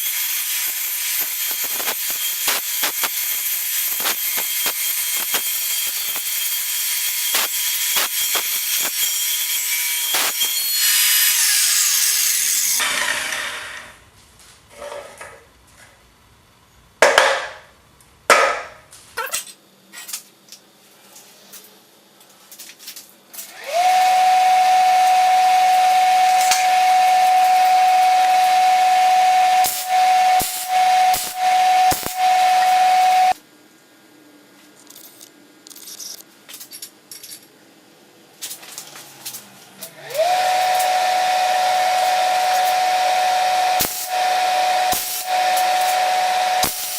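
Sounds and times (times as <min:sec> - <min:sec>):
power tool running: 0:00.0 - 0:14.0, 0:23.4 - 0:33.4, 0:39.8 - 0:46.9.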